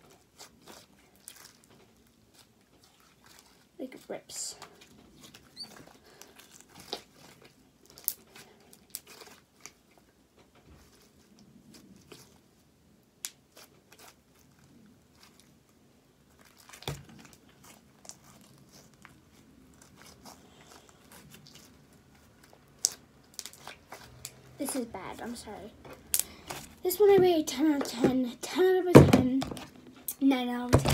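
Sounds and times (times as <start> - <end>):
slime stretched and squeezed: 0.0 - 4.1, 4.7 - 10.0, 13.2 - 24.8
slime crackles and pops: 6.3 - 9.8, 22.5 - 24.4.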